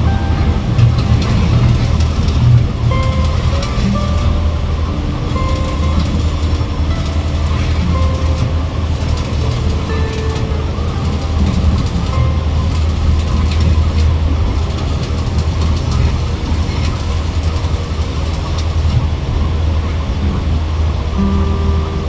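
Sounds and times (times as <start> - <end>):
heavy engine droning: 0.0 - 22.0
clicking and rattling: 0.8 - 4.3, 5.3 - 19.1.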